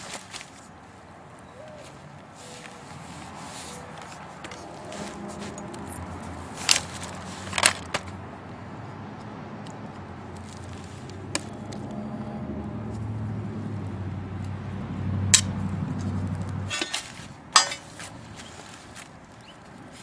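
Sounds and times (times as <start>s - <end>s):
metal knocks and clinks: 16.7s - 18.1s.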